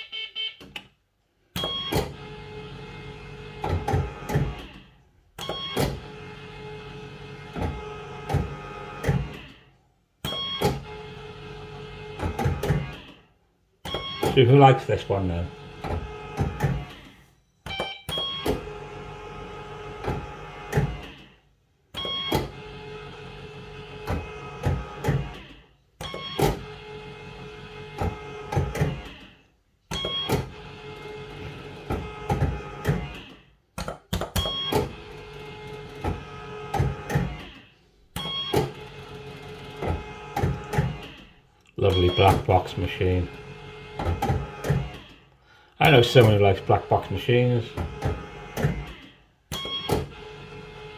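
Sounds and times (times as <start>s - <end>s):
slot machine reels whirring: 41.8s - 45.0s, 45.8s - 48.8s.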